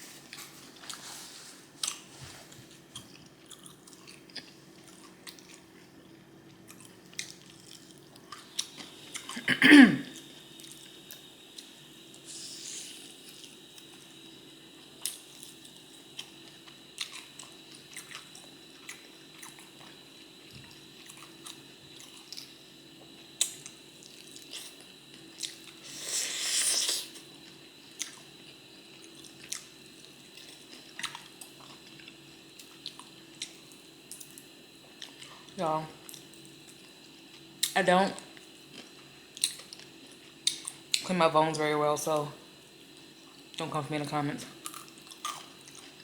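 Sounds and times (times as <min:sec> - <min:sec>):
faint steady hum: 0:00.0 - 0:46.0
chewing and mouth smacking: 0:02.9 - 0:09.4, 0:30.4 - 0:36.8.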